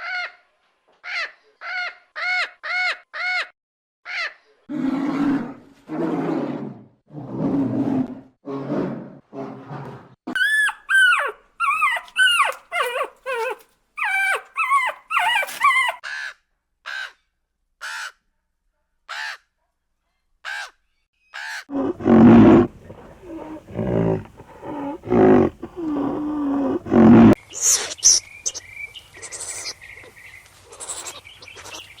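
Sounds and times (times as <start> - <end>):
animal yelping calls: 10.3 - 16.3, 21.4 - 28.6, 29.2 - 29.8, 30.7 - 31.9
loud deep roar: 21.7 - 27.4.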